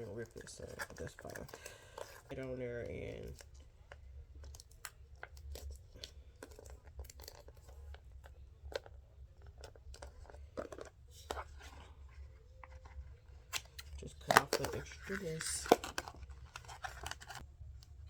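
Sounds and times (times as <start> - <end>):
plastic bag crinkling: 13.6 - 17.4.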